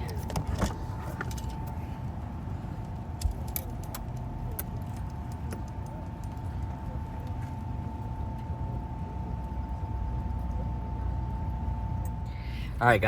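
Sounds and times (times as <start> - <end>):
light clicks and rattles: 0.0 - 7.6
car engine running: 0.0 - 13.0
faint steady whine: 0.0 - 13.0.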